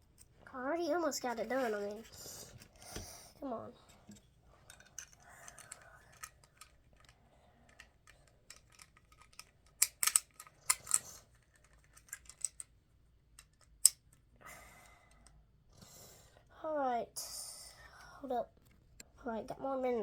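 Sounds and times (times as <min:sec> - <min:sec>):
plastic bricks clicking and clattering: 0:04.7 - 0:12.8.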